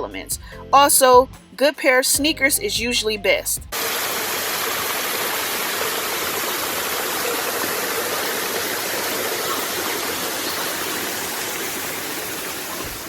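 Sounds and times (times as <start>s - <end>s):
mountain stream rushing: 3.8s - 13.0s.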